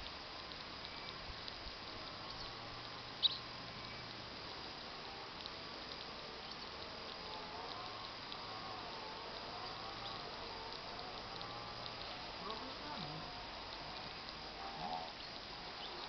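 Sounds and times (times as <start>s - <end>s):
faint steady hiss: 0.0s - 16.0s
small birds chirping: 0.0s - 16.0s.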